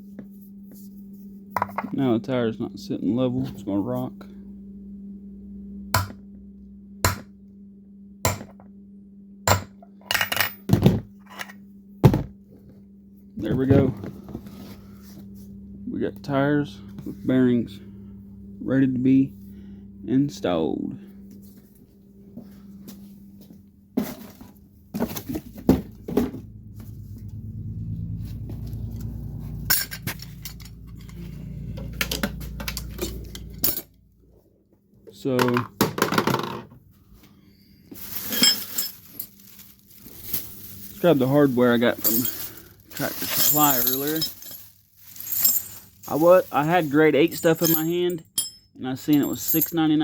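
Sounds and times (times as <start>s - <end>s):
low hum: 0.0s - 49.7s
metal tools clattering: 10.1s - 10.7s, 29.7s - 31.2s, 32.0s - 33.9s, 38.0s - 39.4s, 41.8s - 50.0s.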